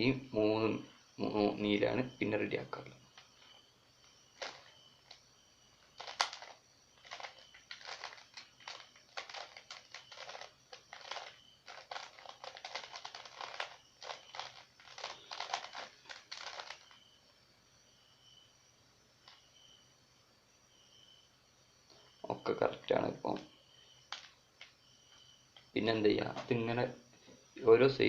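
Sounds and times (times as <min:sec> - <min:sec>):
plastic puzzle cube clicking: 0:04.4 - 0:05.2, 0:06.0 - 0:17.0.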